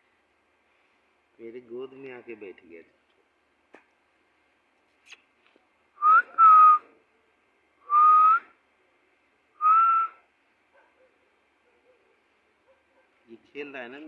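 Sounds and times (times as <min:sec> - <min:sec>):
whistled notes: 0:09.6 - 0:10.2.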